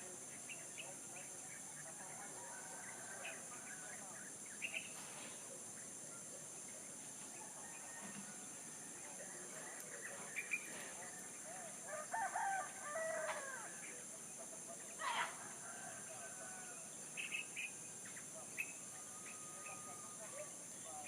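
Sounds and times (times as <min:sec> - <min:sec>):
small birds chirping: 0:00.0 - 0:07.1, 0:09.0 - 0:11.8, 0:16.4 - 0:21.0
steady high-pitched hiss: 0:00.0 - 0:21.0
rooster crowing: 0:07.4 - 0:09.0, 0:11.7 - 0:13.9, 0:15.0 - 0:16.9, 0:18.9 - 0:20.4.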